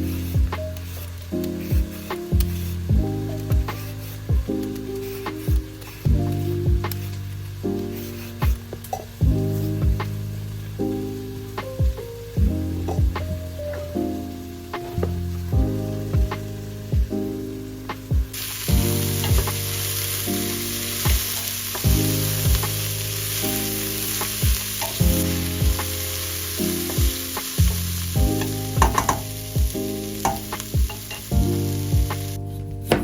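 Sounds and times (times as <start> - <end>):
stirring clicks: 0.0 - 9.2, 26.7 - 31.4
food sizzling in a pan: 0.0 - 11.6, 15.8 - 32.4
soft lo-fi music: 0.0 - 33.0.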